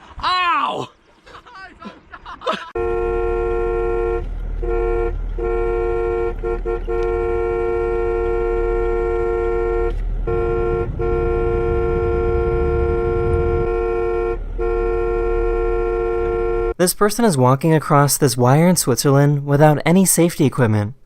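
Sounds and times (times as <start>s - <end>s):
low rumble: 2.8s - 16.8s
vehicle horn two-note blare: 2.8s - 16.8s.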